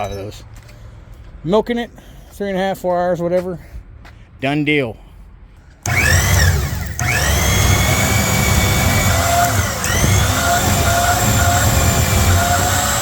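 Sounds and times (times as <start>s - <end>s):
electric motor whining: 5.8s - 13.0s.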